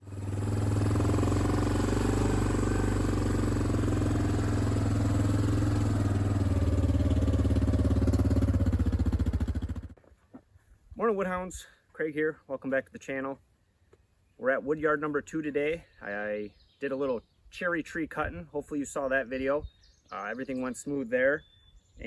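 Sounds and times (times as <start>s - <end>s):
small gasoline engine running: 0.0s - 10.0s.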